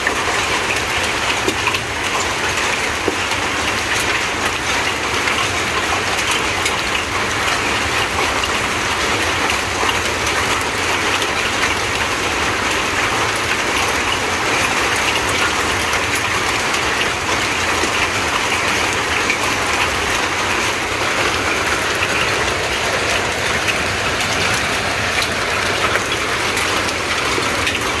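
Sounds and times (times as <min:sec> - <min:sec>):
hailstones ticking: 0:00.0 - 0:28.0
heavy rain hissing: 0:15.6 - 0:28.0.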